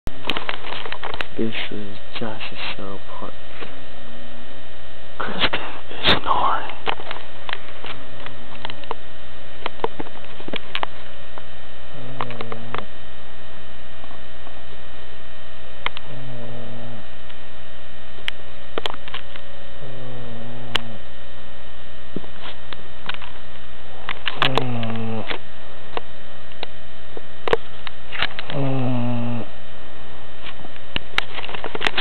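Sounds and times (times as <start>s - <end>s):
steady electrical hum: 0.1s - 32.0s
woman snoring: 16.0s - 17.1s, 19.7s - 21.0s, 24.5s - 25.3s, 28.5s - 29.5s.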